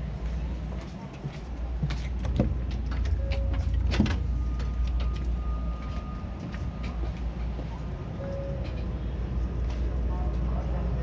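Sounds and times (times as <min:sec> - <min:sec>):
train low rumble: 0:00.0 - 0:11.0.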